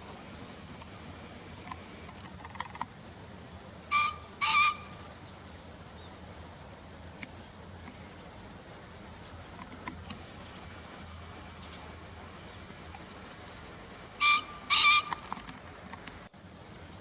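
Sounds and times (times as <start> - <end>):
pheasant crowing: 3.9 - 5.5, 14.1 - 15.7.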